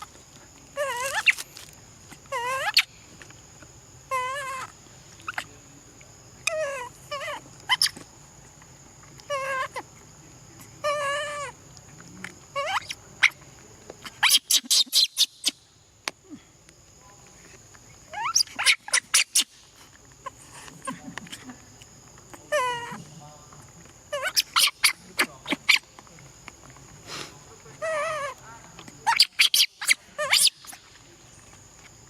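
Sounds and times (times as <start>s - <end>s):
monkey crying and shrieking: 0.8s - 1.4s, 2.1s - 2.9s, 4.1s - 5.5s, 6.4s - 8.0s, 9.2s - 9.9s, 10.8s - 11.6s, 12.5s - 13.4s, 14.0s - 15.6s, 18.1s - 19.6s, 22.5s - 23.1s, 24.1s - 25.9s, 27.7s - 28.4s, 29.0s - 30.9s.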